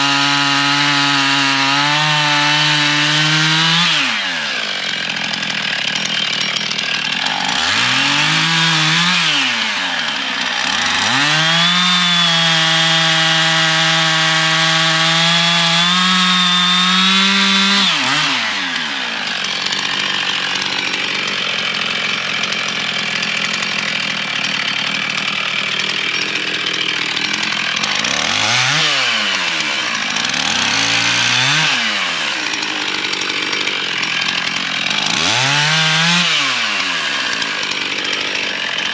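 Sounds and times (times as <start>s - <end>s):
chainsaw cutting firewood: 0.0s - 38.9s.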